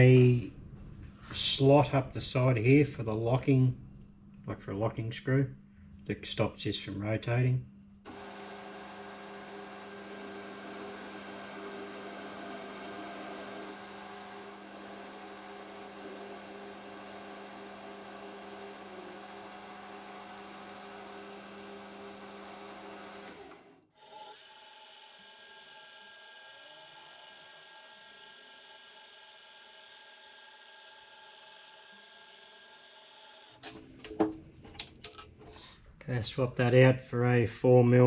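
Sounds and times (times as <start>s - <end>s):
machine motor humming: 8.1s - 34.8s.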